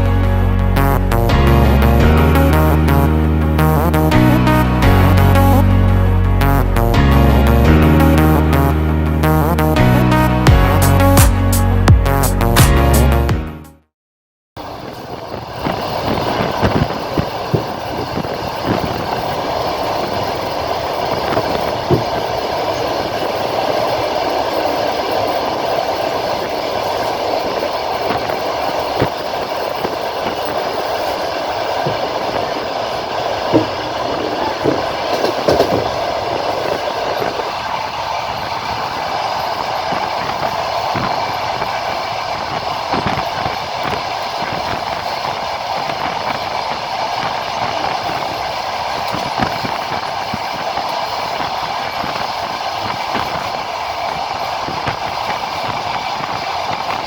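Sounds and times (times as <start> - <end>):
train rolling rumble: 0.0 - 13.3, 14.6 - 57.0
wheels knocking over rail joints: 14.6 - 57.0.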